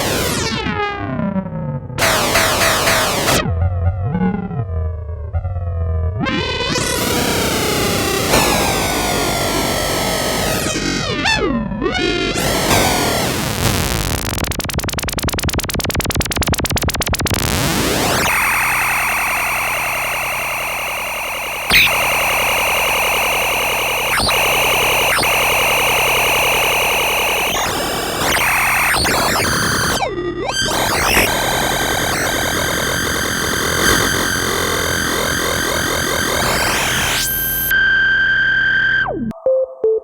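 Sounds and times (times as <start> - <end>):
analog synthesizer noisy patches: 0.0 - 0.8, 2.0 - 3.6, 6.2 - 39.4
synthesizer clicking pulse: 2.0 - 3.6, 6.7 - 37.8
synthesizer sharp hits: 2.0 - 3.6, 8.2 - 19.4.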